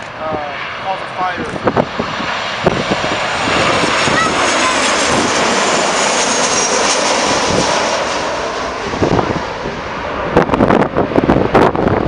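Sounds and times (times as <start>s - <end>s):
jet engines roaring with high whine: 0.0s - 12.0s
wind buffeting microphone: 0.0s - 12.0s.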